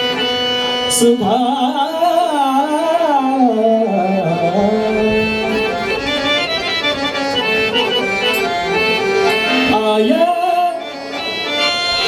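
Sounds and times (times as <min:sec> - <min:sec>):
harmonium melody: 0:00.0 - 0:12.0
tabla beat: 0:00.0 - 0:12.0.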